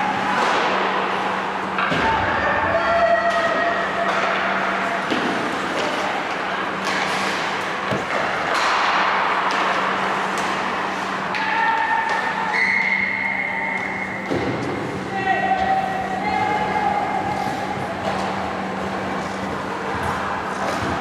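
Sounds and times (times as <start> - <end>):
steady hum in echoing hall: 0.0 - 21.0
sharp knocks of sticks or puck: 3.2 - 12.4.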